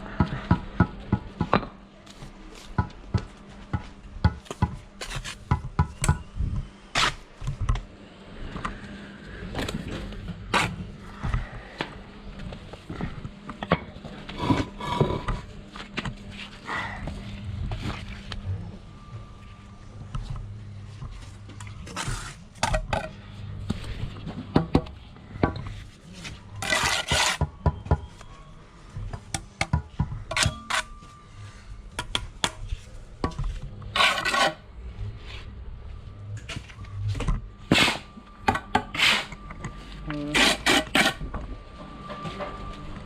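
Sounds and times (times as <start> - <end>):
steady low hum: 0.0 - 43.0
trowel scraping and slapping mortar: 21.8 - 22.5, 26.2 - 27.5, 33.9 - 34.6, 40.3 - 41.2.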